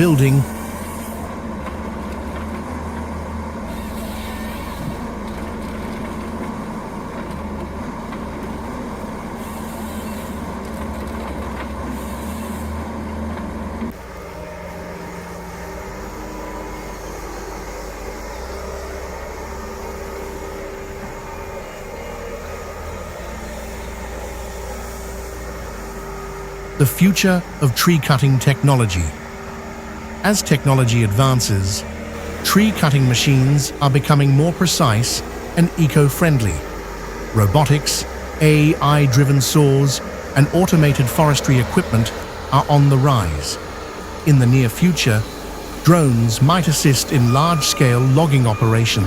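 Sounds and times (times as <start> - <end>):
heavy machinery engine hum: 0.0 - 49.0
steady machine sound: 11.9 - 49.0.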